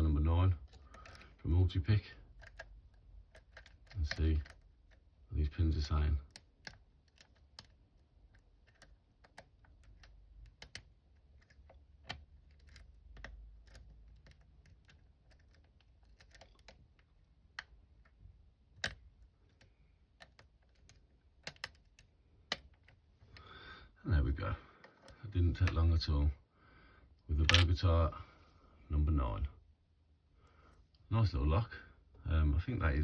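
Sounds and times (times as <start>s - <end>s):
lock pick clicking: 2.3s - 5.0s, 6.3s - 23.0s.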